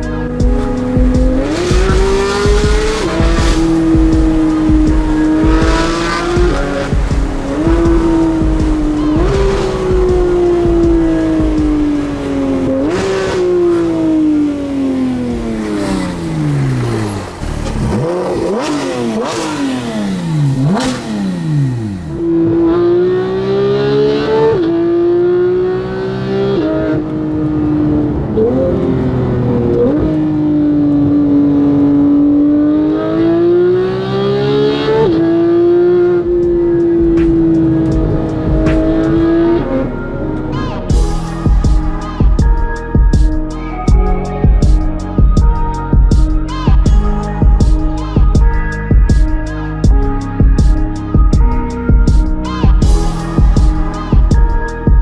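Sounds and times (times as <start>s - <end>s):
sports car engine revving hard: 0.0s - 51.2s
exhaust cracks and pops: 0.4s - 22.2s.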